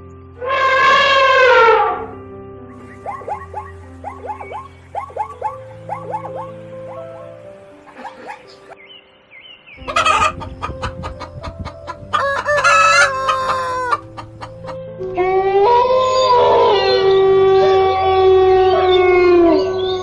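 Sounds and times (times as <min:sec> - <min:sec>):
background music: 0:00.0 - 0:20.0
chickens clucking: 0:02.9 - 0:08.8, 0:09.8 - 0:14.8
rooster crowing: 0:12.1 - 0:14.1.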